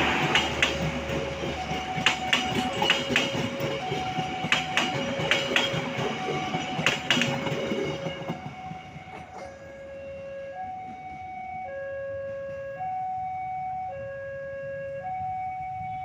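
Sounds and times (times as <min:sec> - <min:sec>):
train wheels clacking: 0:00.0 - 0:09.8
two-tone warning alarm: 0:00.0 - 0:16.0.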